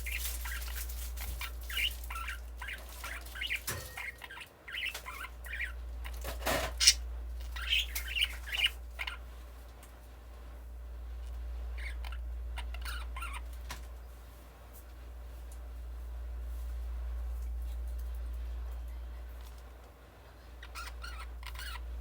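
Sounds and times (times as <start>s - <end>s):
budgerigar chirping: 0.0s - 5.8s, 6.8s - 9.2s, 11.8s - 13.5s, 20.6s - 22.0s
steady low hum: 0.0s - 22.0s.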